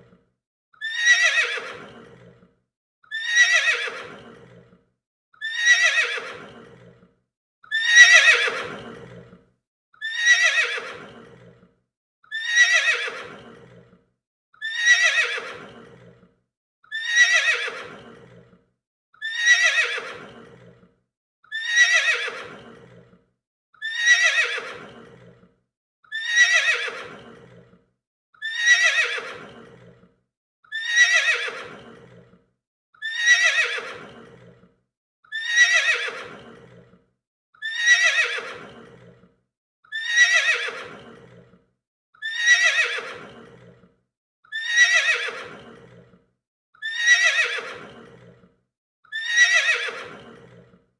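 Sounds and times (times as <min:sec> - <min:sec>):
horse whinny: 0:00.8 - 0:02.4, 0:03.1 - 0:04.7, 0:05.4 - 0:07.0, 0:07.7 - 0:09.4, 0:10.0 - 0:11.6, 0:12.3 - 0:13.9, 0:14.6 - 0:16.3, 0:16.9 - 0:18.5, 0:19.2 - 0:20.8, 0:21.5 - 0:23.1, 0:23.8 - 0:25.4, 0:26.1 - 0:27.7, 0:28.4 - 0:30.0, 0:30.7 - 0:32.3, 0:33.0 - 0:34.6, 0:35.3 - 0:36.9, 0:37.6 - 0:39.2, 0:39.9 - 0:41.5, 0:42.2 - 0:43.8, 0:44.5 - 0:46.1, 0:46.8 - 0:48.3, 0:49.1 - 0:50.8.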